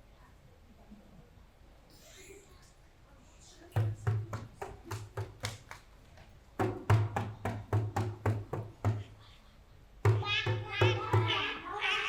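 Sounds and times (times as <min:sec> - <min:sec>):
music with drum beat: 0:06.6 - 0:09.0.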